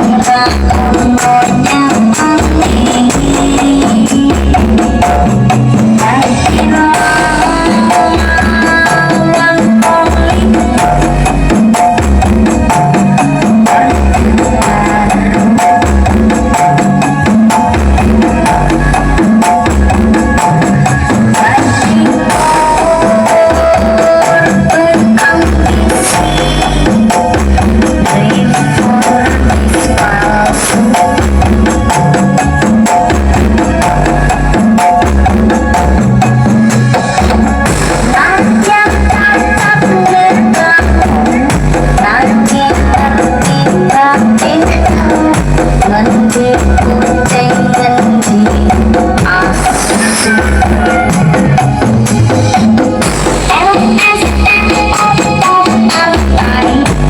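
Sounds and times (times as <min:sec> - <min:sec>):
loud music with heavy bass: 0:00.0 - 0:57.0
heavy bass hits: 0:25.4 - 0:39.2, 0:48.7 - 0:54.6.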